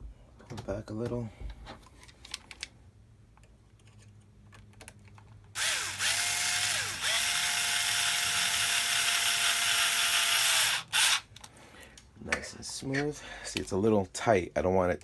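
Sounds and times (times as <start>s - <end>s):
toy car motor gear whine: 5.6s - 11.2s.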